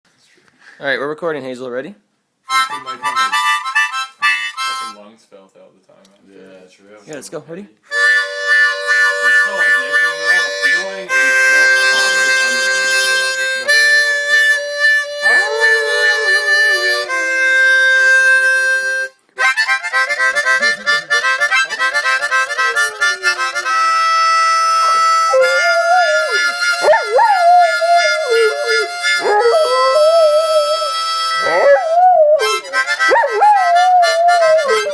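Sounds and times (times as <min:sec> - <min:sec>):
harmonica playing chords: 0:02.5 - 0:05.0, 0:07.9 - 0:34.9
dog howling: 0:15.2 - 0:17.2, 0:25.1 - 0:34.9.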